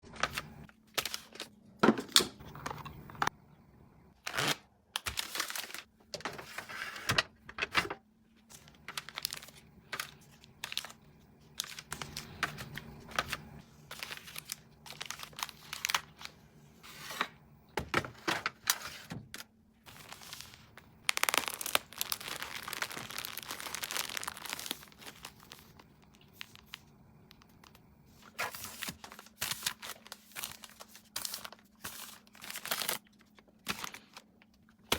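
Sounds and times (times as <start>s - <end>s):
faint steady hum: 0.0s - 34.9s
plastic packaging crinkling: 4.2s - 6.7s, 8.5s - 16.4s, 18.0s - 34.9s.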